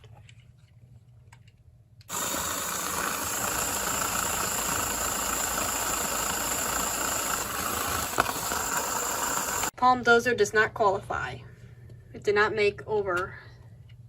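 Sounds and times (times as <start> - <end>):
small electric motor whining: 2.1 - 9.7.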